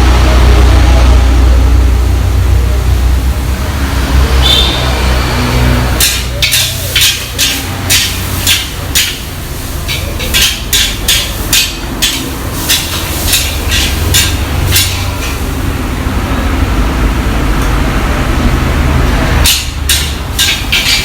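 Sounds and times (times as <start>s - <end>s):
metal spatula scraping a wok: 5.6s - 15.4s, 19.5s - 21.0s.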